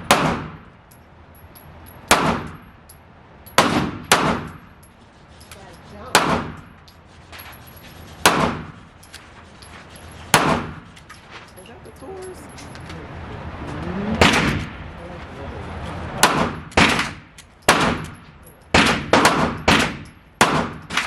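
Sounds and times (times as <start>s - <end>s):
gunshots with echo: 14.2s - 14.8s, 16.2s - 18.1s, 18.7s - 21.0s.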